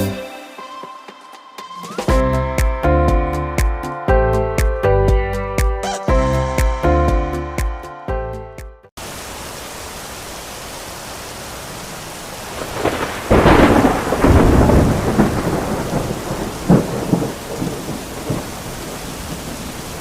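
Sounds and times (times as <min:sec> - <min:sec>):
heavy rain falling: 0:09.0 - 0:20.0
thunder clap rumbling: 0:12.4 - 0:20.0.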